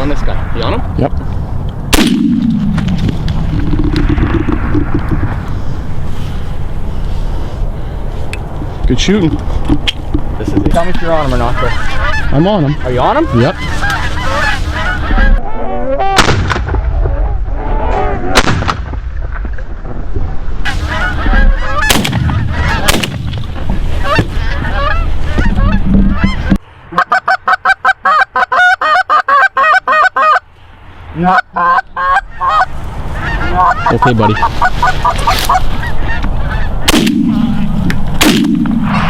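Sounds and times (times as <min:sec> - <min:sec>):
shotgun shots: 0:01.9 - 0:02.8, 0:16.2 - 0:16.8, 0:21.9 - 0:23.4, 0:36.9 - 0:37.6, 0:38.2 - 0:39.0
geese honking: 0:10.4 - 0:16.2, 0:20.6 - 0:30.4, 0:31.2 - 0:38.2.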